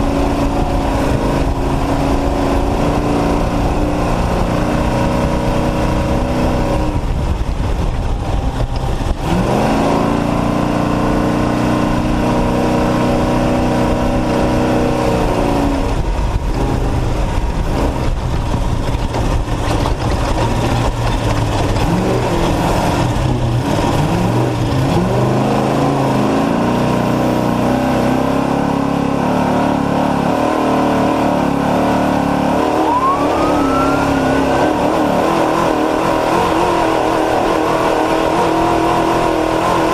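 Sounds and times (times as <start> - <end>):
truck engine revving under load: 0.0 - 39.9
rising whistle: 32.6 - 35.4.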